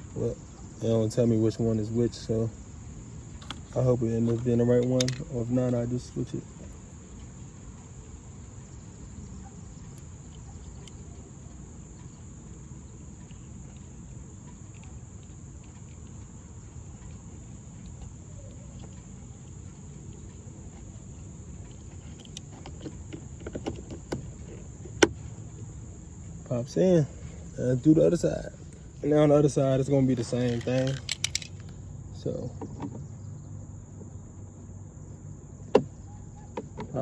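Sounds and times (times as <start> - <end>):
insects chirring: 0.0 - 37.0
low steady rumble: 0.0 - 37.0.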